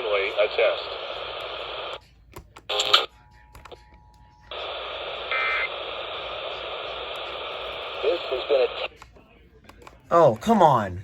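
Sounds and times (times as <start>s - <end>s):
radio static hiss: 0.0s - 2.0s, 4.5s - 9.0s.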